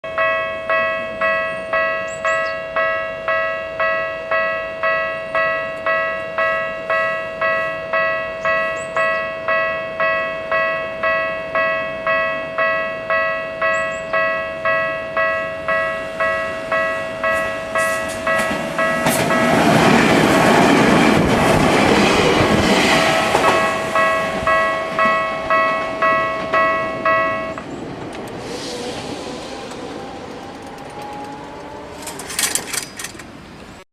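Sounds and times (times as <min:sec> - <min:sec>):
level-crossing electronic bell: 0:00.1 - 0:19.9, 0:23.4 - 0:27.6
electric train passing: 0:00.1 - 0:33.8.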